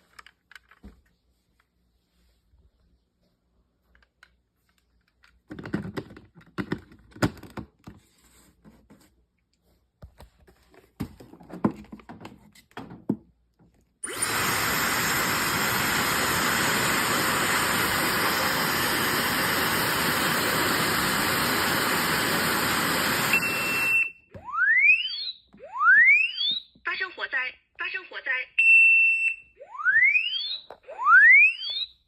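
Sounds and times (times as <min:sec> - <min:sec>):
fire alarm sounding: 0:22.8 - 0:27.1, 0:28.6 - 0:32.0
short high steady tone: 0:23.3 - 0:24.2.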